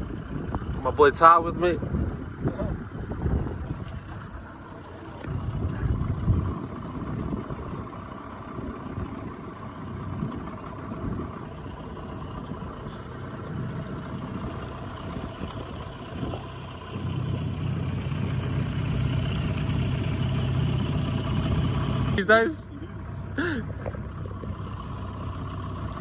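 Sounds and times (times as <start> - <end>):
wind noise: 0.0 - 4.6
outboard motor running: 0.0 - 26.0
water noise: 0.0 - 26.0.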